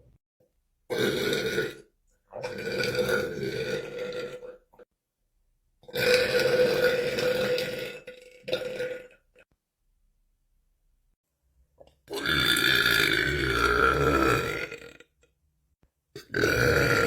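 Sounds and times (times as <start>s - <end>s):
man belching: 12.1s - 15.1s, 16.2s - 17.0s.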